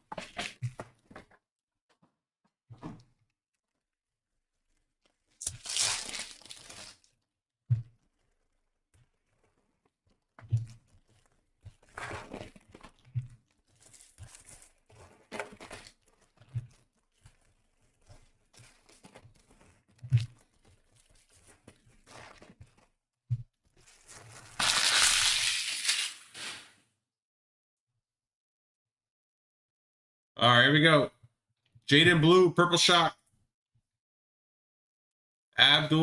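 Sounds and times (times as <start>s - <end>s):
wrappers crinkling and tearing: 5.1s - 7.2s, 13.7s - 16.4s, 23.8s - 26.7s.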